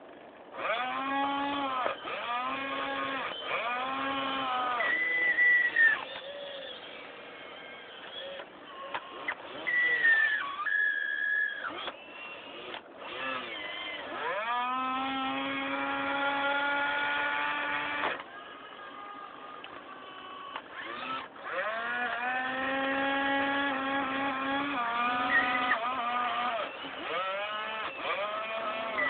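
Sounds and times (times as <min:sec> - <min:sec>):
electric motor whining: 0:00.0 - 0:29.0.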